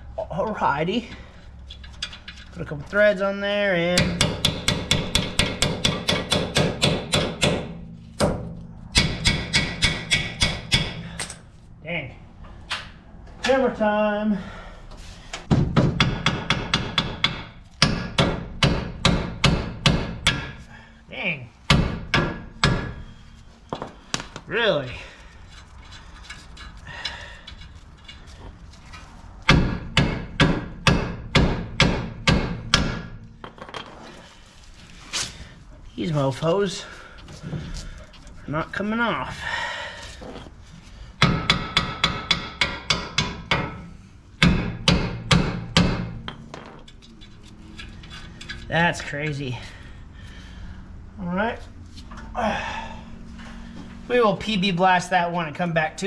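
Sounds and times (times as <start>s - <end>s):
hammer striking metal: 4.0s - 11.4s, 15.6s - 20.6s, 21.7s - 23.1s, 29.5s - 33.3s, 41.2s - 46.7s.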